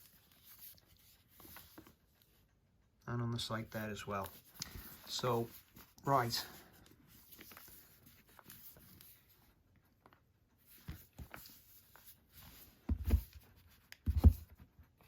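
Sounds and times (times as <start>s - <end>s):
cardboard box rustling: 10.7s - 14.6s.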